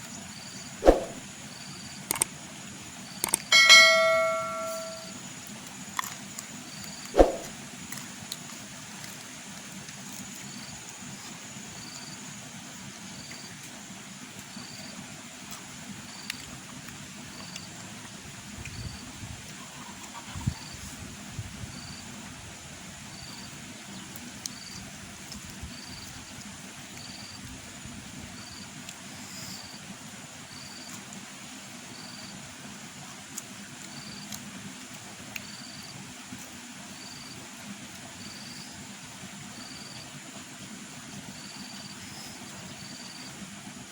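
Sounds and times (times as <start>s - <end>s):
steady background noise: 0.0s - 43.9s
faint high chirps: 3.6s - 5.2s.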